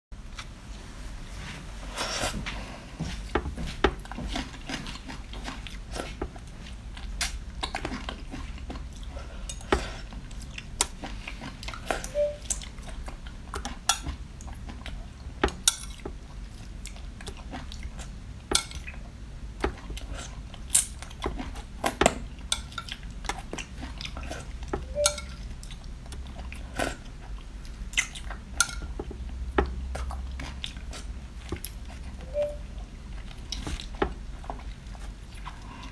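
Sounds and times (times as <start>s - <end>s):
low steady hum: 0.2s - 35.9s
chewing: 2.2s - 35.9s
utensils and dishes clattering: 24.8s - 25.4s.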